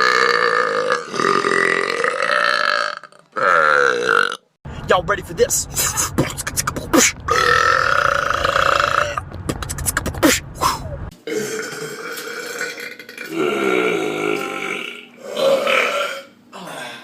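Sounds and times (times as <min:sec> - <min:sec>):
long belches: 0:00.0 - 0:04.5, 0:07.3 - 0:09.2, 0:11.2 - 0:16.3.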